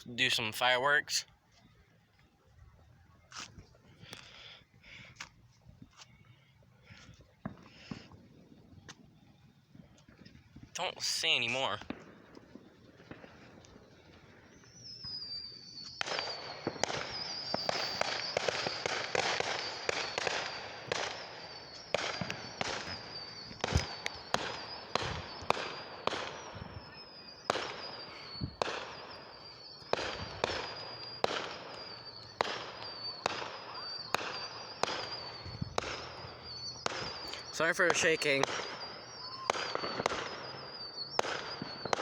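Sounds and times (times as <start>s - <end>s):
fireworks bangs and crackling: 6.8s - 42.0s
high whistle sliding down: 13.6s - 42.0s.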